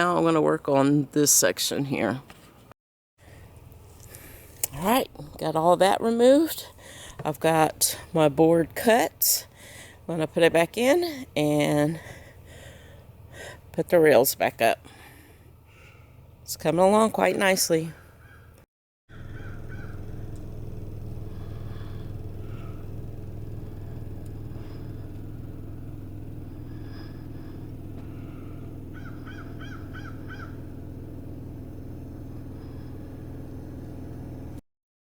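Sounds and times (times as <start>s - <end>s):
low machine hum: 3.2s - 34.6s
birds calling: 18.1s - 20.3s, 26.6s - 30.8s.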